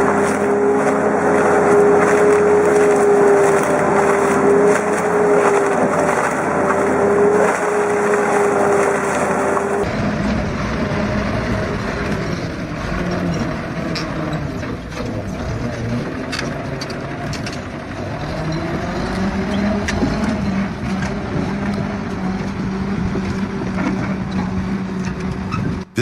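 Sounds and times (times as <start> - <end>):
machine engine running under load: 0.0 - 13.7.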